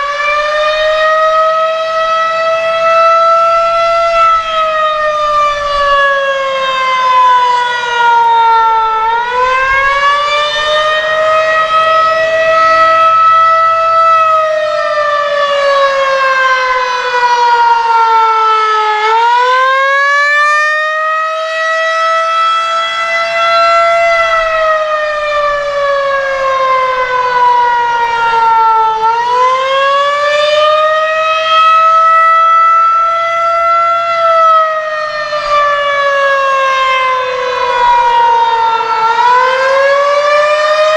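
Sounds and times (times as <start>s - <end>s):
wailing tornado siren: 0.0s - 40.9s.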